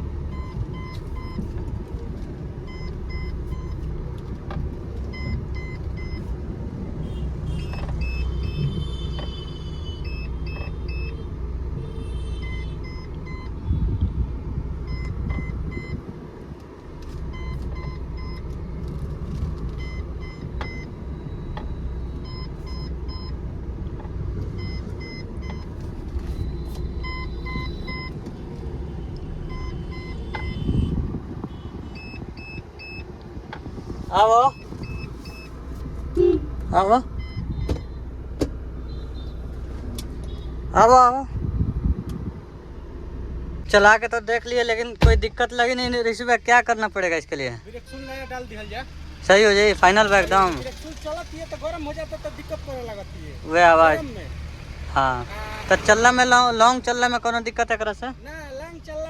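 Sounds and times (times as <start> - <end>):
car engine and road rumble: 0.0 - 59.0
short electronic beeps: 5.1 - 6.3, 7.0 - 11.3, 11.9 - 13.6, 14.9 - 16.0, 19.8 - 23.4, 24.6 - 28.2, 29.5 - 33.0, 34.4 - 35.6, 37.2 - 38.0.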